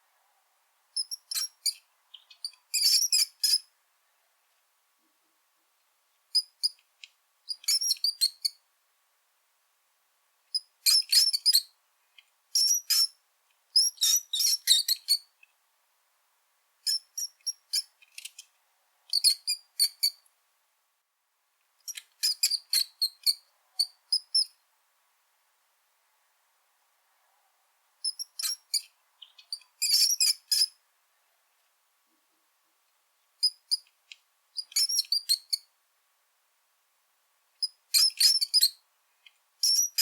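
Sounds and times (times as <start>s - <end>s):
rat squeaking: 1.0s - 3.7s, 7.5s - 8.5s, 13.8s - 15.3s, 21.9s - 24.5s, 28.0s - 30.8s, 34.6s - 35.6s, 37.6s - 38.7s, 39.6s - 40.0s.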